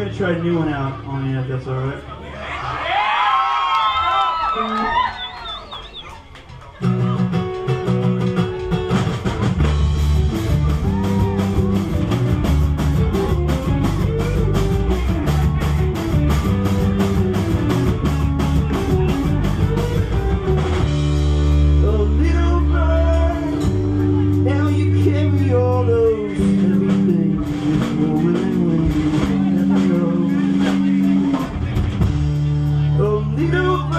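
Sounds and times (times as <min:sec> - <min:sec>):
live rock band playing: 0:03.9 - 0:33.9
steady drum beat: 0:06.8 - 0:33.9.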